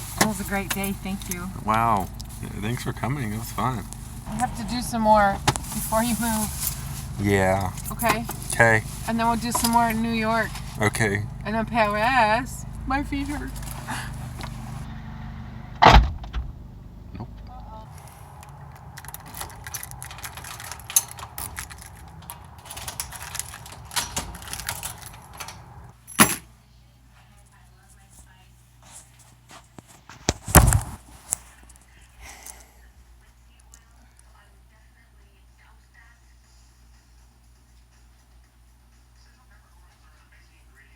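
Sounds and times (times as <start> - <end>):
car cabin rumble: 0.0 - 25.9
steady low hum: 0.0 - 29.2
small objects clicking and rattling: 17.9 - 25.6.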